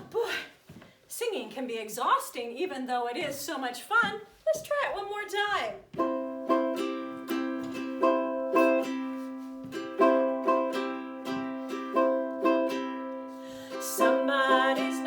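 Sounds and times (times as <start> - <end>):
small stringed instrument strumming: 5.9 - 15.0.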